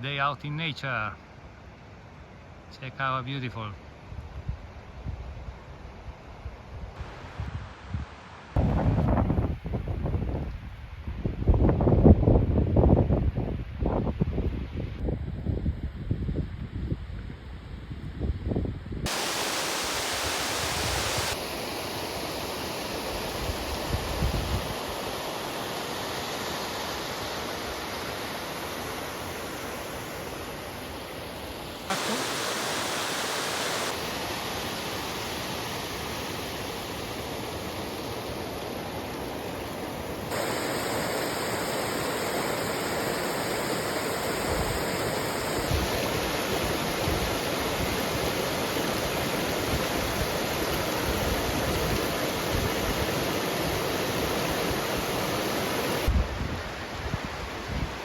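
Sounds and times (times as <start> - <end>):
mountain stream rushing: 19.1 - 24.0, 24.7 - 57.7.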